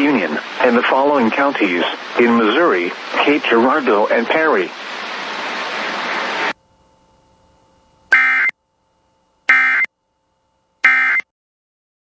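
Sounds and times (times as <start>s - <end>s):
broadcast hiss: 0.0s - 9.9s
rasping two-tone data bursts: 8.1s - 8.6s, 9.5s - 9.9s, 10.8s - 11.2s.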